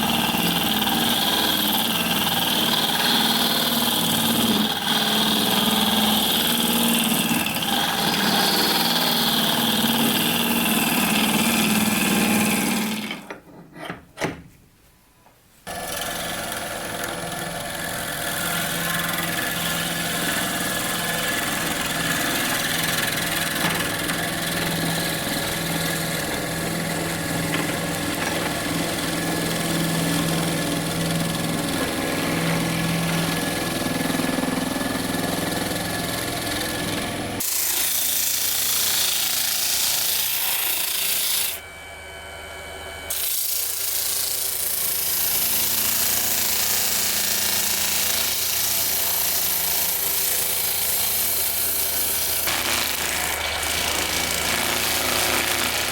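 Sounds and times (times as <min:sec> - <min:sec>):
lathe motor hum: 0:15.9 - 0:37.6.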